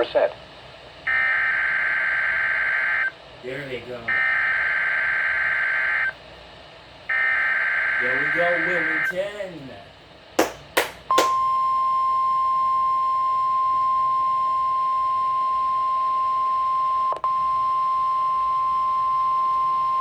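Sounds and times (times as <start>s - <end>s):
steady high alarm tone: 1.1s - 6.1s, 7.1s - 9.3s, 10.4s - 13.0s.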